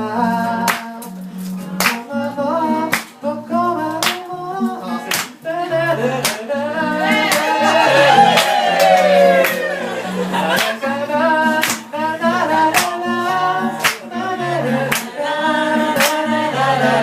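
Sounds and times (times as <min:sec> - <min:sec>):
acoustic guitar: 0:00.0 - 0:17.0
person singing: 0:00.0 - 0:17.0
sharp clap-like hits: 0:00.7 - 0:01.2, 0:01.8 - 0:02.1, 0:02.9 - 0:03.2, 0:04.0 - 0:04.3, 0:05.0 - 0:05.4, 0:06.2 - 0:06.4, 0:07.3 - 0:07.6, 0:10.5 - 0:10.9, 0:11.6 - 0:11.9, 0:12.7 - 0:13.0, 0:13.8 - 0:14.1, 0:14.9 - 0:15.2, 0:16.0 - 0:16.2.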